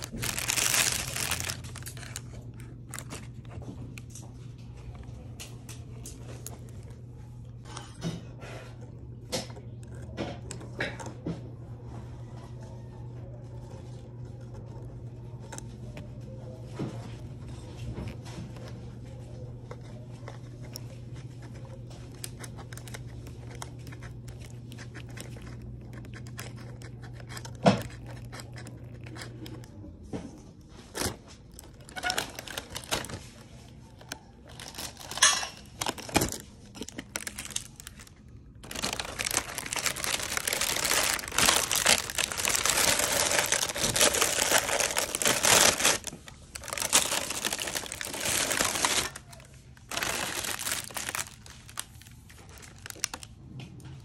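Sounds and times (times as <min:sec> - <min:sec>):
plastic packaging crinkling and tearing: 0:00.0 - 0:04.2, 0:20.1 - 0:29.7, 0:30.6 - 0:53.4.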